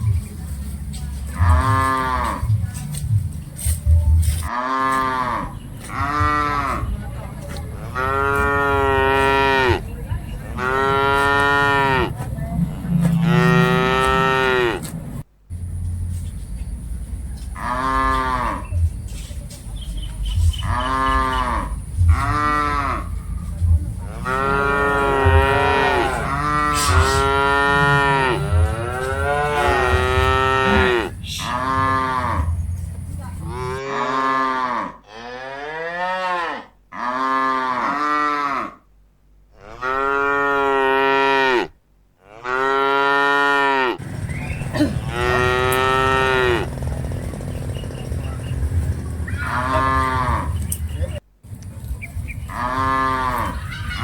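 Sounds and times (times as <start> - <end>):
cattle mooing: 7.8 - 9.9, 10.5 - 14.9, 17.6 - 18.8, 20.5 - 23.2, 24.0 - 32.6, 33.4 - 38.8, 39.6 - 44.0, 44.6 - 47.4, 49.0 - 50.7, 52.5 - 53.7
low rumble: 9.8 - 33.8, 44.0 - 53.6.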